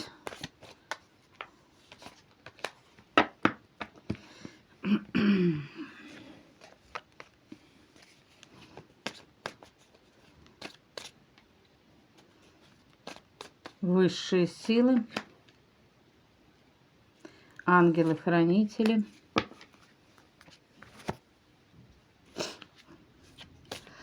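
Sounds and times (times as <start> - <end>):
cards sliding rustle: 0.0 - 3.2, 6.1 - 11.5, 12.1 - 13.8, 18.8 - 21.2, 22.5 - 24.0
cards snapping and clicking: 0.2 - 4.2.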